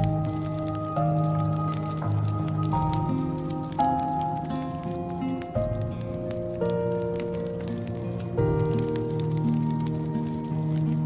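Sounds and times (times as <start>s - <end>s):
music of held chords: 0.0s - 11.0s.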